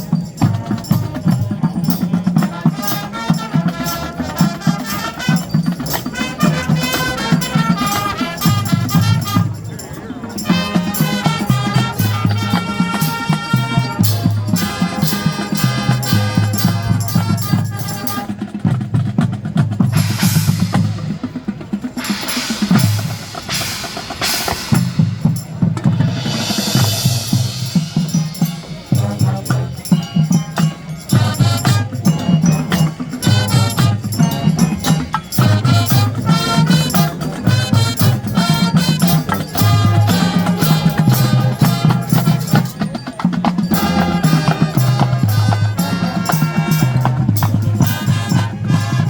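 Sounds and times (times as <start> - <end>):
marching band playing: 0.0 - 49.0
snare and bass drums: 0.0 - 49.0
cymbal washes: 20.0 - 49.0.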